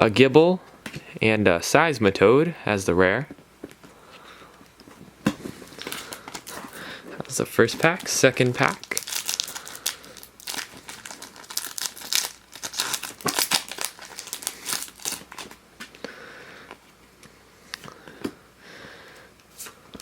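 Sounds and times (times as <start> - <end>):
foil card pack tearing and crinkling: 5.6 - 15.6.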